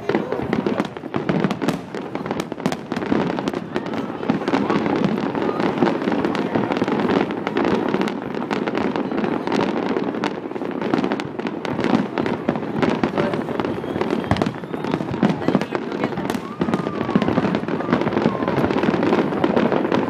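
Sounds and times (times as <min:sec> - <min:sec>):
fireworks bangs and crackles: 0:00.0 - 0:20.0.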